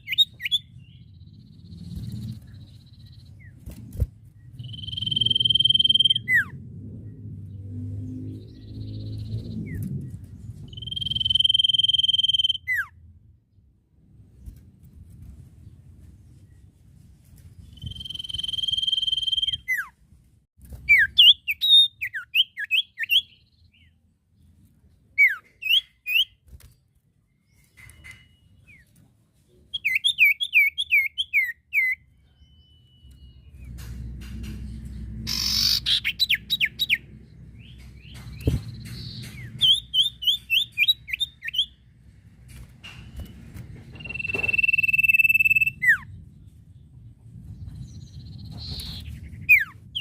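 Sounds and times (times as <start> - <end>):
bird whistling song: 0.0 - 3.6, 4.4 - 6.6, 10.7 - 13.0, 17.6 - 20.0, 20.8 - 24.0, 25.2 - 26.4, 29.7 - 33.7, 35.3 - 41.8, 43.9 - 46.2, 47.6 - 50.0
low background rumble: 0.6 - 11.2, 41.0 - 50.0.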